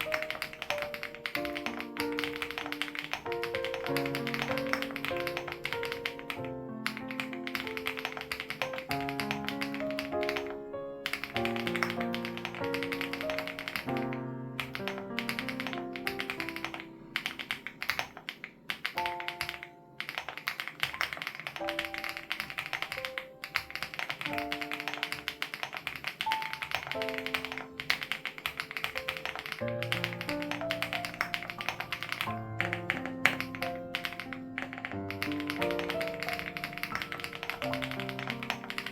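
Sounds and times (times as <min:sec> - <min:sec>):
gentle background music: 0:00.0 - 0:38.9
mechanical keyboard typing: 0:00.0 - 0:38.9.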